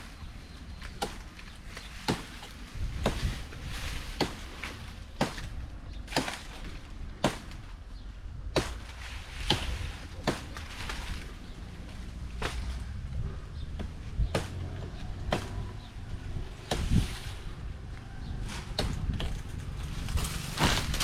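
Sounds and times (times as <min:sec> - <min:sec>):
blade chopping branches: 0:00.0 - 0:07.8, 0:08.5 - 0:21.0.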